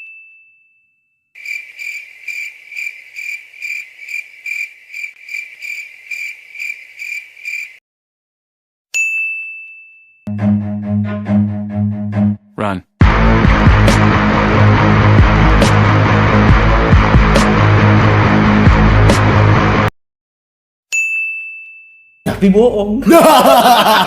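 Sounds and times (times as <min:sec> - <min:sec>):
music: 0:10.3 - 0:19.9
bright ding: 0:20.9 - 0:22.2.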